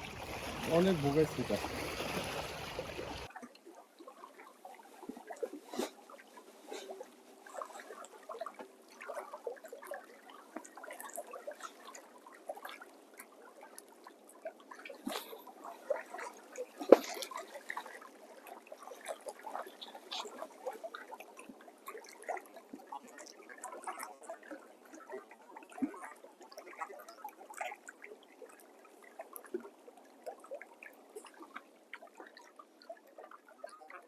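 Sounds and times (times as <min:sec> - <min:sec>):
water splashing and dripping: 0:00.0 - 0:06.4, 0:07.0 - 0:21.2.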